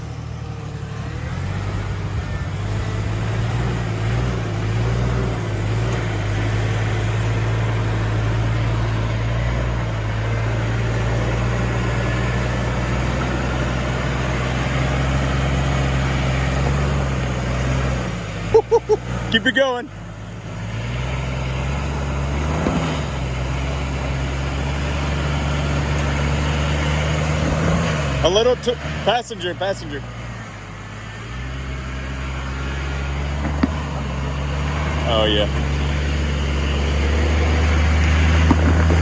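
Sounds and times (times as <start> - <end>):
off-road vehicle engine running: 0.0 - 39.0.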